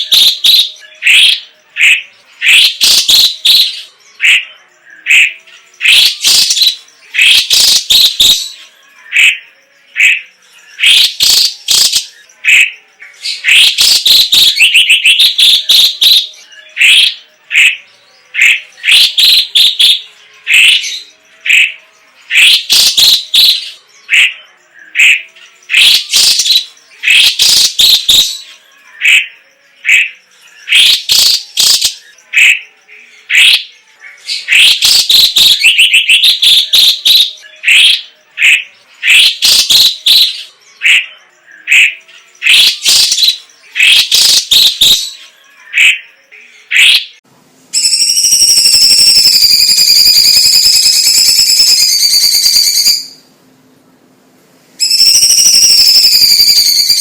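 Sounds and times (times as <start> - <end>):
bird singing varied song: 0.0 - 54.1, 54.8 - 57.0
bird rattling trill: 54.8 - 57.0.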